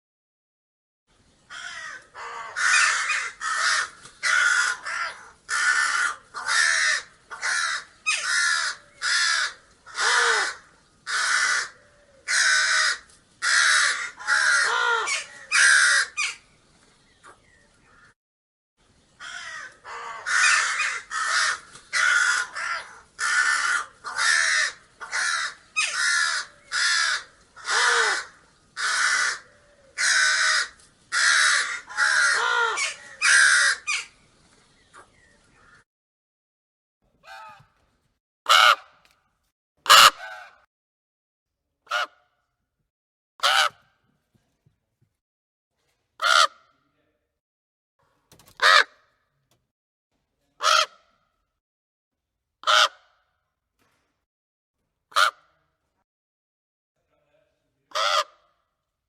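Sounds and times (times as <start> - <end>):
crows cawing: 1.5 - 16.4, 19.2 - 34.2, 38.5 - 39.0, 39.9 - 40.7, 41.9 - 42.2, 43.4 - 43.9, 46.2 - 46.7, 48.6 - 49.1, 50.6 - 51.1, 52.6 - 53.2, 55.1 - 55.6, 57.9 - 58.6.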